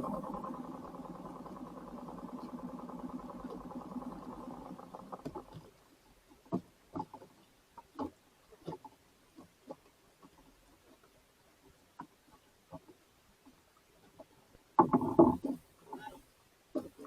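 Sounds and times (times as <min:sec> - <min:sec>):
small boat engine humming: 0:00.0 - 0:06.9.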